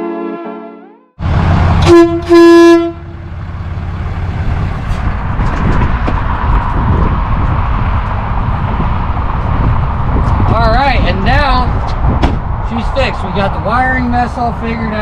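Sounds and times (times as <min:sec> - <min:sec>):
train horn blasts: 0:00.0 - 0:01.0, 0:01.8 - 0:03.2.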